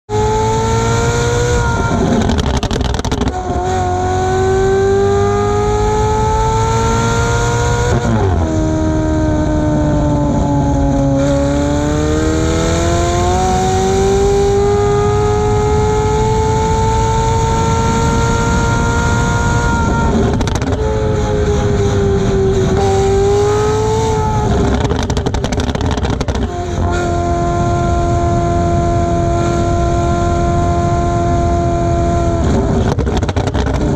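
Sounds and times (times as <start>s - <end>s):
sports car engine accelerating: 0.1s - 33.9s
exhaust pops and crackles: 1.8s - 3.8s, 19.7s - 21.2s, 24.4s - 27.2s, 32.3s - 33.9s.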